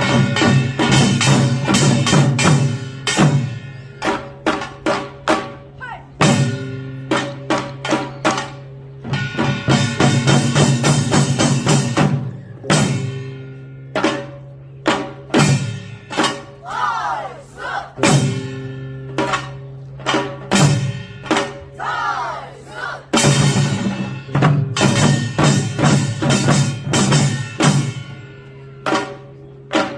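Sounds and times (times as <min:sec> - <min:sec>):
metal and drum percussion strikes: 0:00.0 - 0:16.7, 0:18.0 - 0:21.9, 0:23.1 - 0:29.9.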